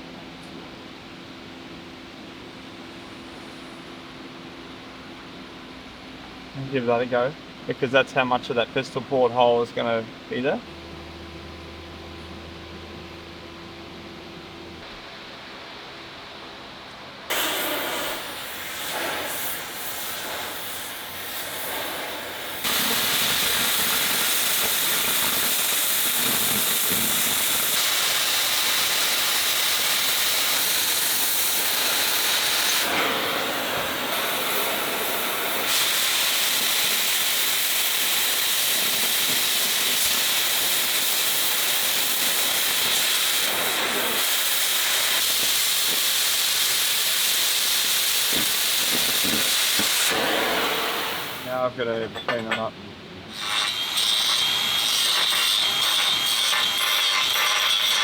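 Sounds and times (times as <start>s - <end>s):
welder hissing: 17.3s - 51.7s, 53.3s - 58.0s.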